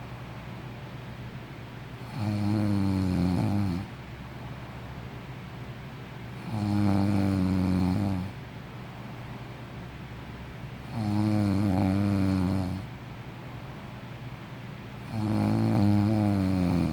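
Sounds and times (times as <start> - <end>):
person snoring: 2.0 - 3.9, 6.4 - 8.4, 10.9 - 12.9, 15.1 - 16.9.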